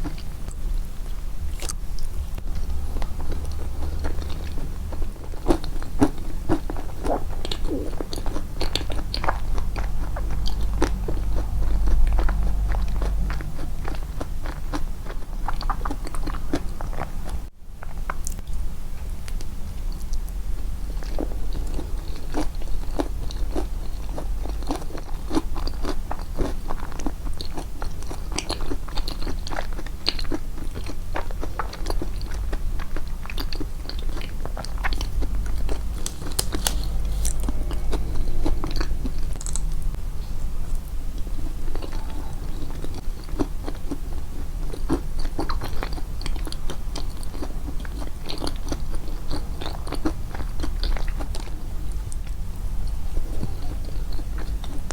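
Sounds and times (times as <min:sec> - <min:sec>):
moist chewing with crunches: 0:00.0 - 0:18.6, 0:19.3 - 0:40.0, 0:40.7 - 0:54.9
low hum: 0:00.0 - 0:25.0, 0:32.1 - 0:43.3.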